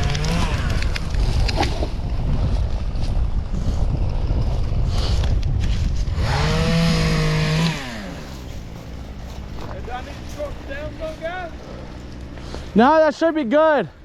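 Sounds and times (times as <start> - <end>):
chainsaw engine revving: 0.0 - 1.5, 6.0 - 12.6
wind rumbling on microphone: 0.0 - 12.8.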